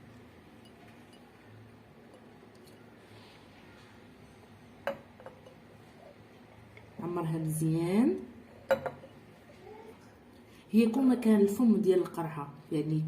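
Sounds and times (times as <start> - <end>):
clink against glass jar: 4.7 - 5.6.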